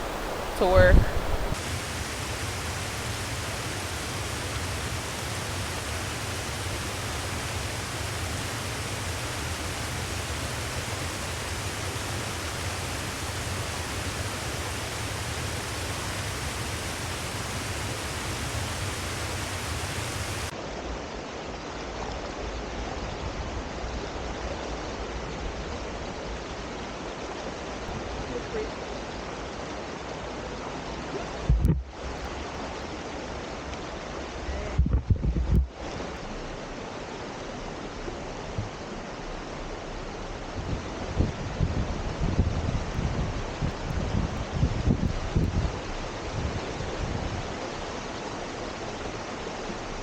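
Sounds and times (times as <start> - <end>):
river water rushing: 0.0 - 22.4, 46.0 - 50.0.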